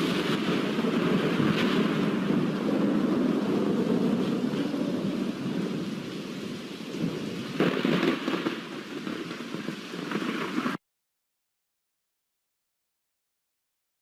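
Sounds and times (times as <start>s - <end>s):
steady rain: 0.0s - 10.8s
thunder: 0.0s - 10.8s.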